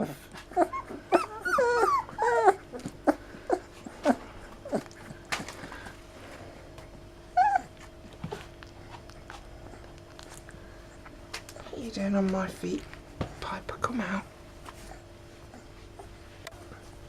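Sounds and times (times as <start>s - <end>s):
puppies whimpering and squeaking: 0.0s - 5.9s, 7.3s - 8.5s.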